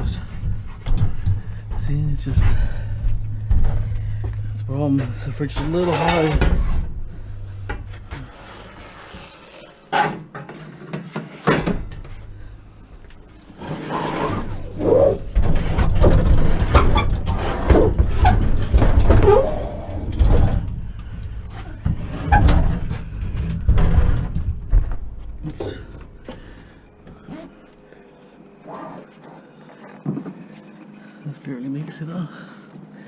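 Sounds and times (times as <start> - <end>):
metal scraping and knocking: 0.0 - 10.6.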